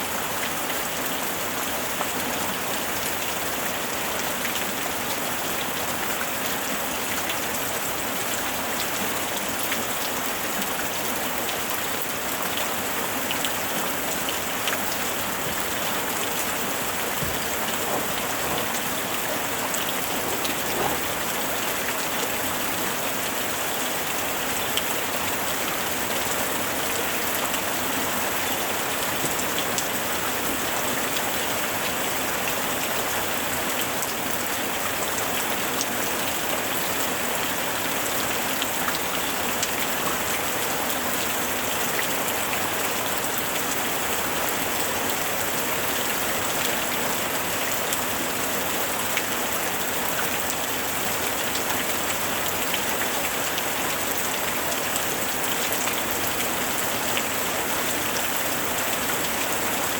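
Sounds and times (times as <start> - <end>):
steady rain hiss: 0.0 - 59.9
raindrops ticking: 14.4 - 22.0.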